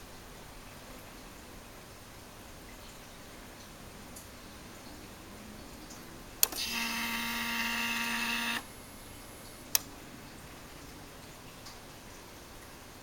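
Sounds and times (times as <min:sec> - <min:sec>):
electric pump whining: 0:06.4 - 0:08.7.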